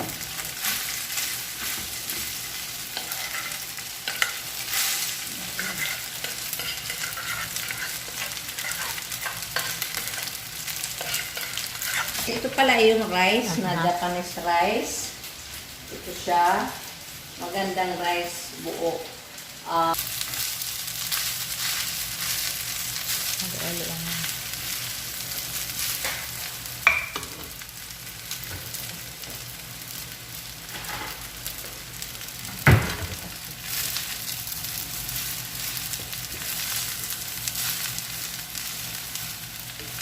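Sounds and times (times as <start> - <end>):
rice sizzling in oil: 0.0 - 40.0
stirring scrape in pan: 0.6 - 12.2.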